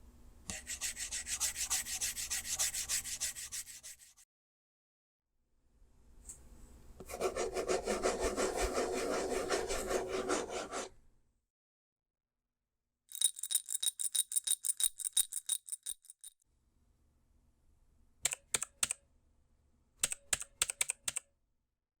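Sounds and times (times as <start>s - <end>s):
fingernails scratching wood: 7.2s - 10.9s
coins rattling in a cup: 13.1s - 16.4s
keyboard typing clicks: 18.3s - 19.0s, 20.0s - 21.2s.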